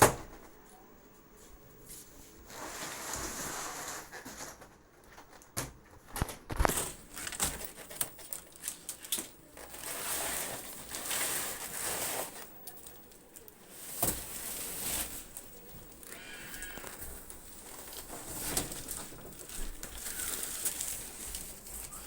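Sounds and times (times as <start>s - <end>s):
packaging crinkling and tearing: 6.2s - 22.0s.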